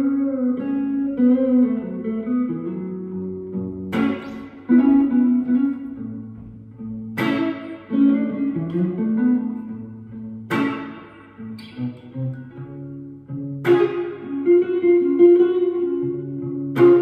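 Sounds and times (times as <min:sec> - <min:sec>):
electric guitar chords ringing: 0:00.0 - 0:17.0
guitar single-note fills: 0:00.0 - 0:17.0.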